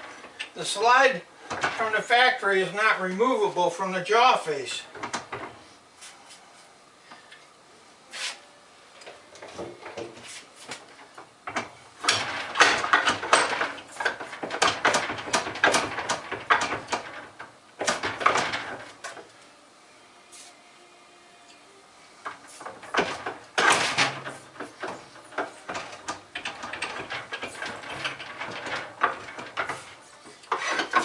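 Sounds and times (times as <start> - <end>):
cast-iron parts knocking and clinking: 1.5 - 2.0, 5.0 - 5.6, 11.0 - 19.3, 22.3 - 31.0.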